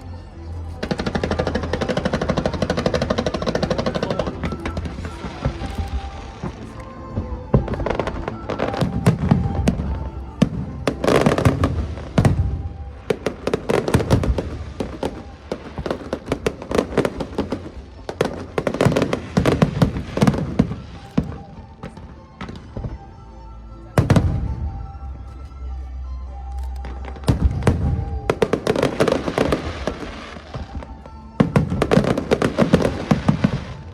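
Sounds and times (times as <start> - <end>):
music playing: 0.0 - 33.9.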